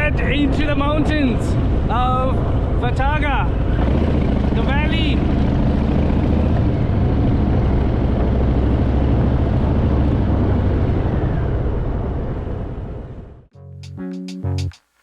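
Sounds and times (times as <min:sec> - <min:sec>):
motorcycle engine running: 0:03.6 - 0:10.6.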